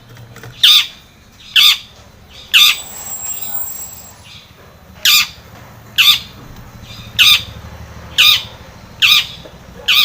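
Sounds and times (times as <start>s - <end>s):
shrike harsh calls: 1.5s - 5.4s.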